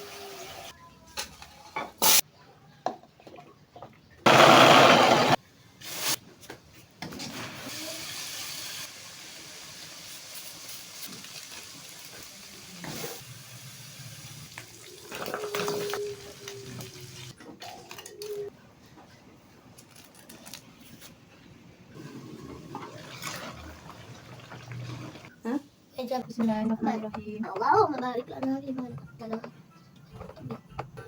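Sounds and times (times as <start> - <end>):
tap water running: 22.0 - 25.3.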